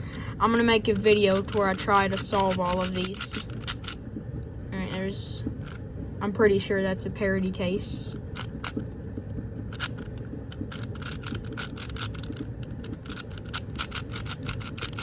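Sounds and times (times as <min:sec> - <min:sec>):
puzzle cube layers clicking: 0:00.9 - 0:04.0, 0:09.7 - 0:15.0.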